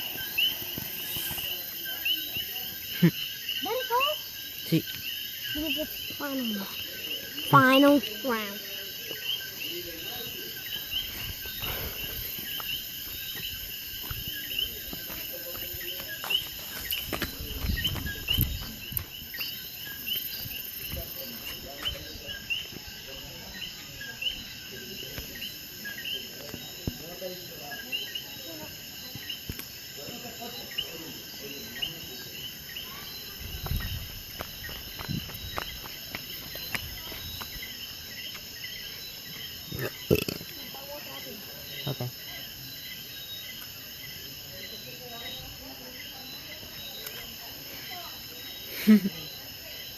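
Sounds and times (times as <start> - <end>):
fireworks popping and crackling: 0.0 - 1.7
insects chirping: 0.0 - 49.9.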